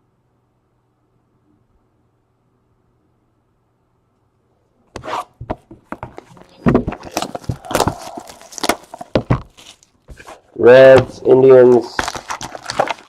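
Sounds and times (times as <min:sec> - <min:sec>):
card pack wrappers tearing: 0:06.3 - 0:13.0.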